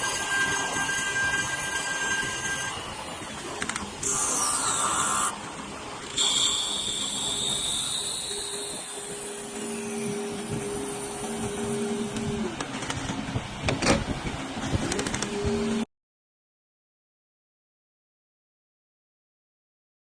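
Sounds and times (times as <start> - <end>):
wood lathe motor whine: 0.0 - 12.6
higher whine: 0.0 - 12.8.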